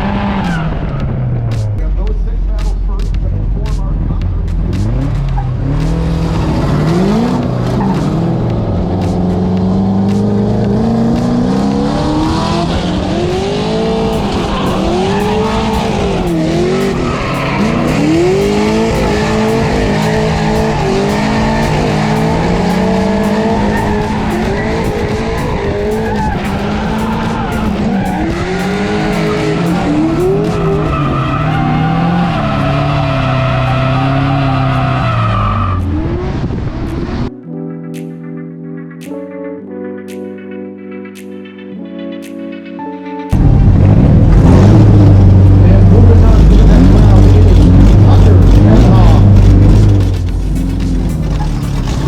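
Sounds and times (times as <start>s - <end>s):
car engines revving: 0.0s - 37.3s, 43.3s - 52.0s
tyres hissing and squealing: 13.7s - 35.8s.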